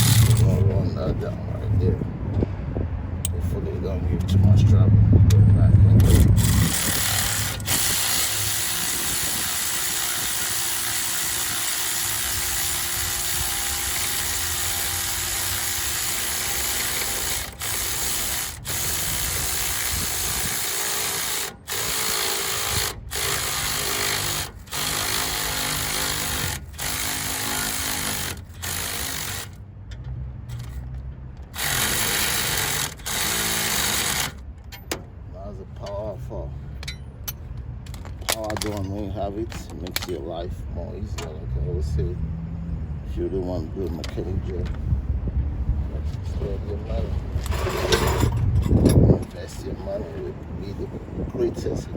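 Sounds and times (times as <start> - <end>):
impact wrench running a nut: 0.0 - 0.6, 6.0 - 29.6, 30.5 - 34.5, 47.4 - 49.2.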